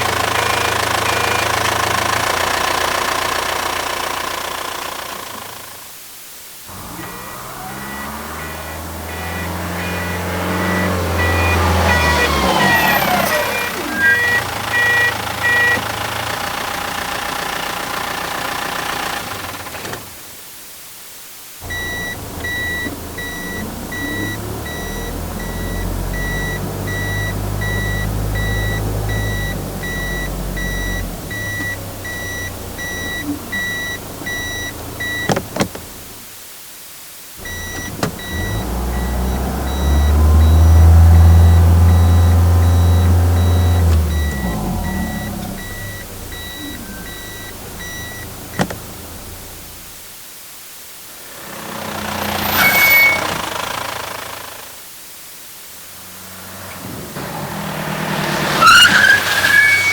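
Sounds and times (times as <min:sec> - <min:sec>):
truck engines running: 0:00.0 - 0:05.9, 0:06.7 - 0:20.3, 0:21.6 - 0:36.2, 0:37.4 - 0:50.1, 0:51.3 - 0:54.7, 0:55.9 - 0:59.9
electronic warning beeper: 0:07.0 - 0:16.0, 0:21.7 - 0:35.4, 0:37.4 - 0:48.8.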